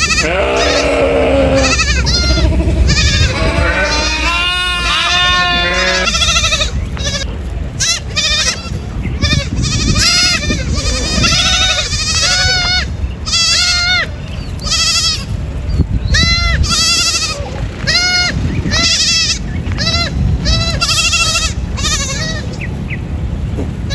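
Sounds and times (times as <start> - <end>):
goats bleating: 0.0 - 15.4, 16.1 - 22.7
low rumble: 0.0 - 23.9.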